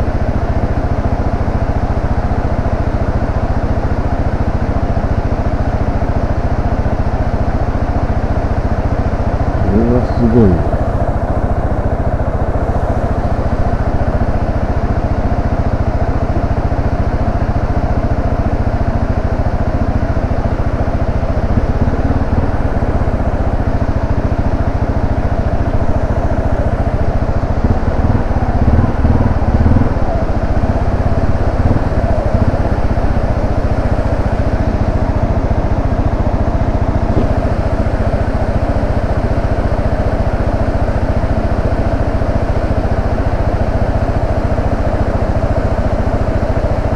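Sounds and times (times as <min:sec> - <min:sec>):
motorcycle engine running: 0:00.0 - 0:46.9
low rumble: 0:19.6 - 0:39.6.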